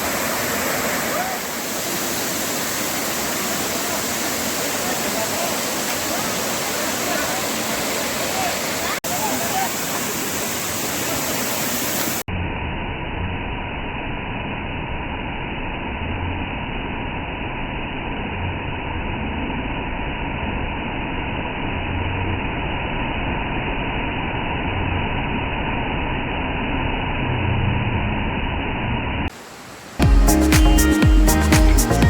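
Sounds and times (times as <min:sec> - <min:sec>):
waterfall roar: 0:00.0 - 0:12.3, 0:29.3 - 0:30.0
muffled vehicle rumble: 0:12.3 - 0:29.3.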